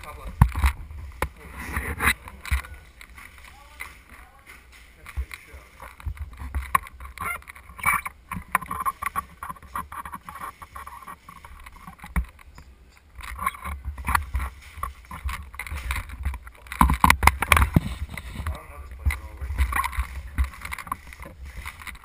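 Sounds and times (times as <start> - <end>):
camera handling knocks and rustling: 13.2 - 18.5.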